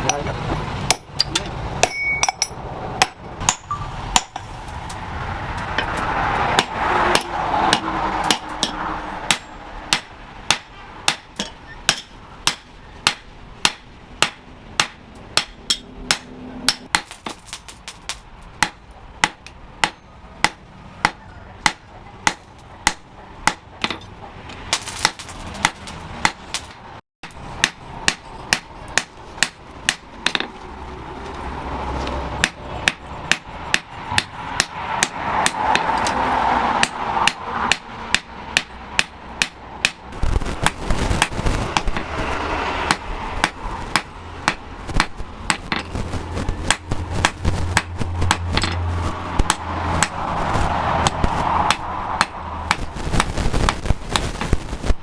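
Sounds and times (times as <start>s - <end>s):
hammer striking steel on anvil: 0.9s - 4.5s, 6.6s - 17.2s.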